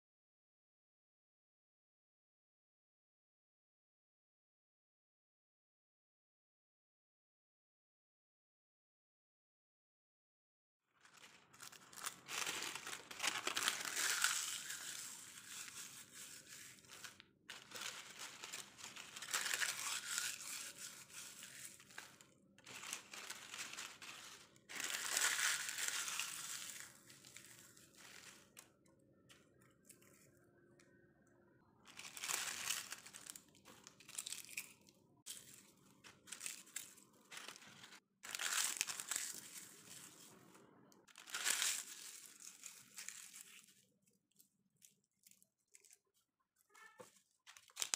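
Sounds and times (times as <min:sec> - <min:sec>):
dry leaves crumbling by hand: 0:11.1 - 0:28.7, 0:31.9 - 0:40.3, 0:41.1 - 0:43.8, 0:47.5 - 0:47.9.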